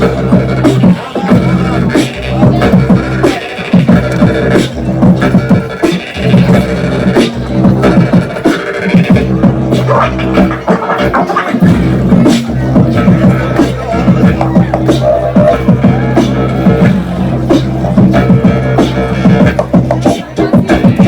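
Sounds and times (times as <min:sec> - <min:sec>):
low bass drone: 0:00.0 - 0:03.2, 0:03.8 - 0:08.4, 0:11.7 - 0:20.0
beatboxing: 0:00.0 - 0:21.0.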